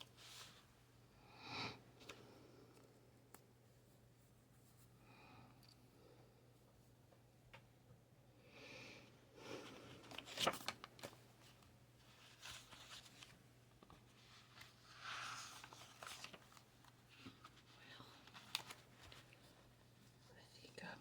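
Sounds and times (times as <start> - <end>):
paper rustling: 10.0 - 19.6.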